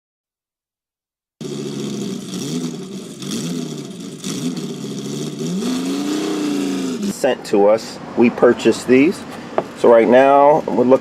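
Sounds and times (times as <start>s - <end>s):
engine revving: 1.4s - 8.4s.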